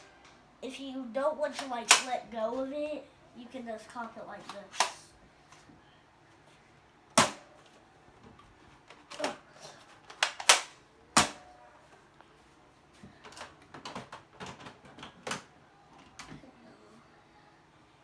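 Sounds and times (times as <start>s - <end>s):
toy blaster being cocked: 1.6s - 2.2s
plastic clicks and rattles: 10.0s - 10.8s, 13.2s - 16.4s.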